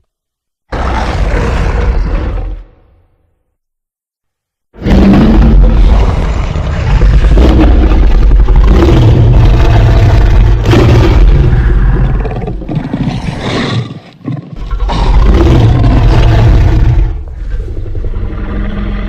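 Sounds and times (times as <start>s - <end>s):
loud roaring rumble: 4.8s - 12.3s, 14.7s - 19.0s.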